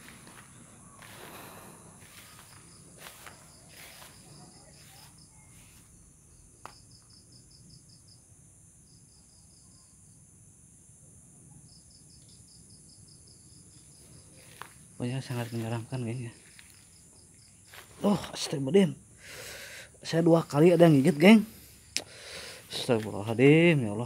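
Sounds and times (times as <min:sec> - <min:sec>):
soft rustling steps: 0:00.0 - 0:06.0, 0:14.0 - 0:17.0, 0:17.6 - 0:18.1, 0:20.4 - 0:23.8
insect chirping trill: 0:00.0 - 0:24.0.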